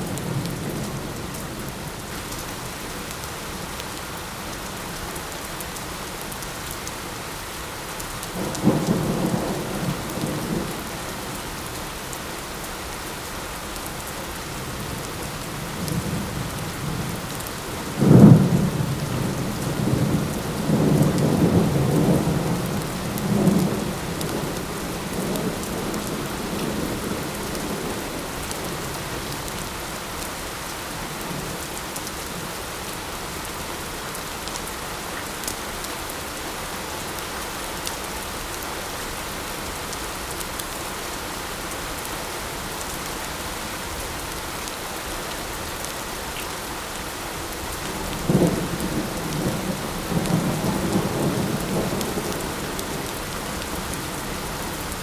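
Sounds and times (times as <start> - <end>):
steady light rain: 0.0 - 55.0
thunder rumbling and cracking: 17.8 - 29.4, 47.8 - 55.0.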